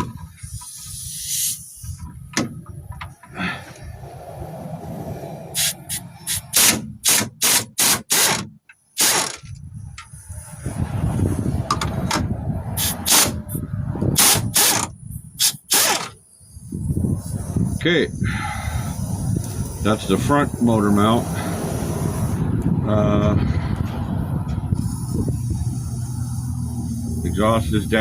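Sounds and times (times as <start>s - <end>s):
ratchet wrench clicking: 5.6s - 8.4s.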